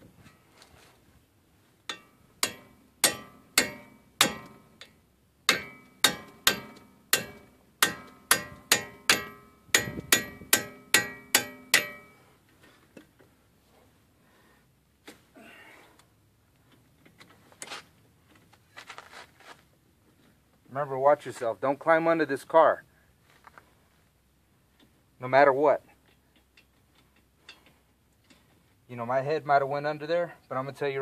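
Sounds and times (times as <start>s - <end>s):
sledgehammer striking metal: 1.9s - 4.9s, 5.5s - 12.2s.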